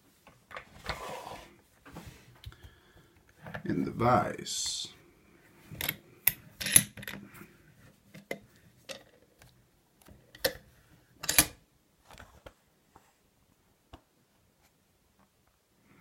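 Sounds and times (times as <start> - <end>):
metal tools clicking and knocking: 5.8 - 7.2, 11.2 - 11.6.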